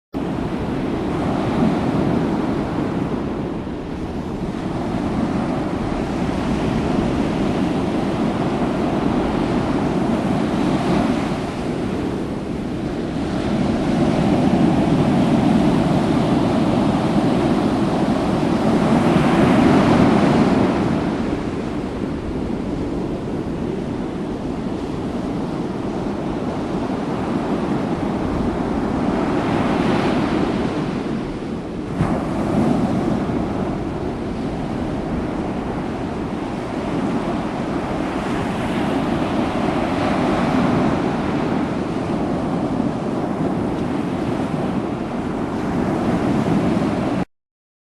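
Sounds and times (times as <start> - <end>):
waves breaking on a beach: 0.2 - 47.2
wind rumbling on microphone: 0.2 - 47.2.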